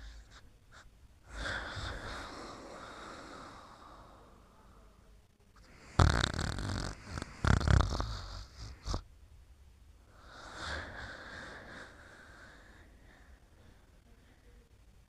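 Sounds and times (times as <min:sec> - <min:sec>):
person snoring: 0:01.3 - 0:04.3, 0:05.6 - 0:09.0, 0:10.1 - 0:13.3
short snort: 0:05.6 - 0:09.0
wheezy breath: 0:10.1 - 0:13.9.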